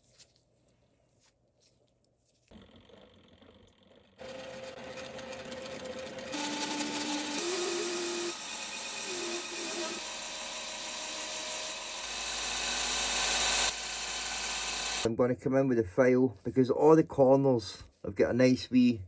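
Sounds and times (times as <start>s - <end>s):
whining cutting tones: 2.5s - 15.1s
lathe cutting hiss: 6.3s - 15.1s.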